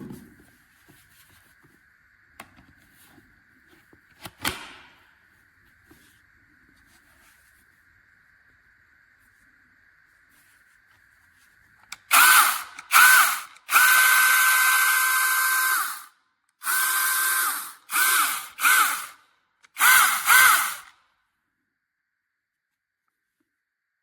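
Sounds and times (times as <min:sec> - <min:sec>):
mini chainsaw motor whining: 0:12.0 - 0:20.9.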